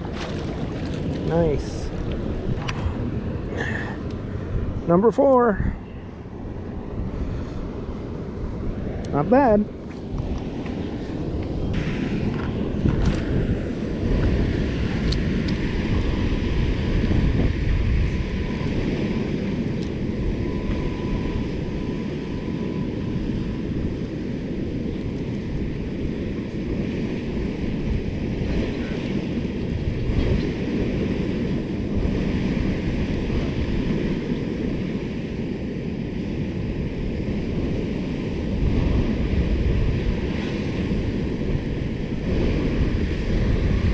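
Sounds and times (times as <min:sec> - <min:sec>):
water lapping: 0:00.0 - 0:02.2
low rumble: 0:00.0 - 0:18.8
wind buffeting microphone: 0:00.0 - 0:43.9.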